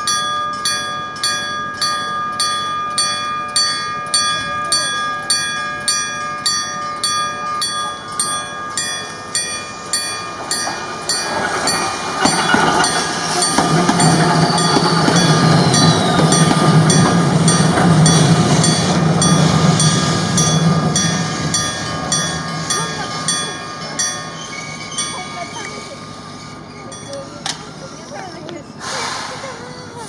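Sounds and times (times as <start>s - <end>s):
level crossing bell ringing: 0.0s - 11.4s
tram rumbling across crossing: 0.0s - 30.0s.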